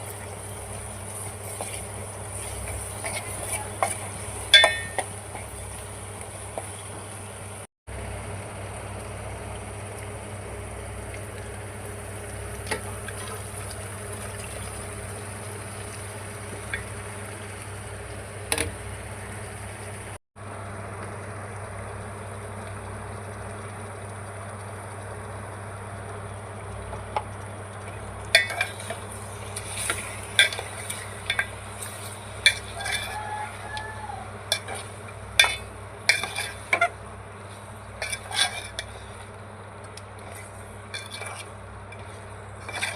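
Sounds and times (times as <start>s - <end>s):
spoon scraping a pan: 0.0s - 7.0s, 28.4s - 39.4s, 40.2s - 42.9s
curry sizzling in a pan: 0.0s - 7.7s, 8.6s - 20.2s, 24.2s - 42.9s.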